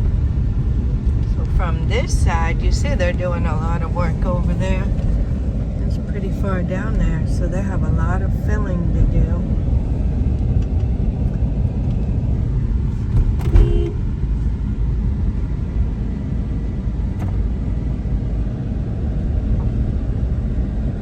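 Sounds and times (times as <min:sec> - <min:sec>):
car interior low rumble: 0:00.0 - 0:21.0.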